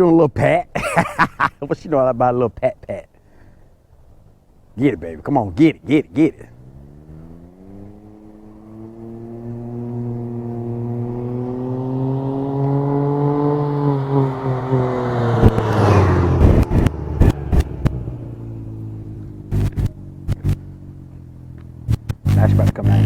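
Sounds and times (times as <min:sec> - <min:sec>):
three-wheeler engine passing by: 0:05.8 - 0:23.0.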